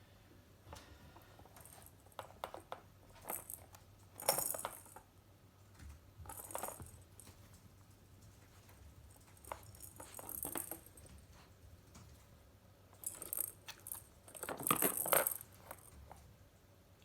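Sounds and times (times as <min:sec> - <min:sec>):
toy jingling and rattling: 0:06.3 - 0:07.2, 0:09.0 - 0:11.1, 0:13.0 - 0:15.9.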